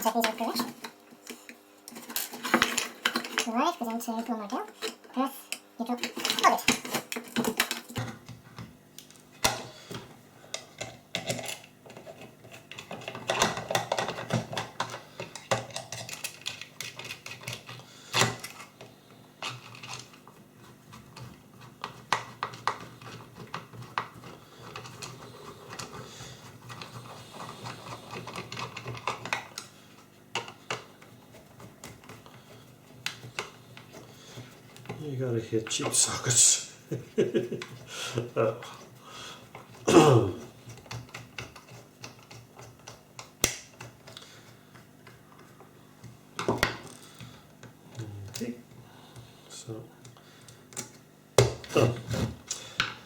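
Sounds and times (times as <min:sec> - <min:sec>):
small parts clicking and tapping: 0:04.2 - 0:35.0.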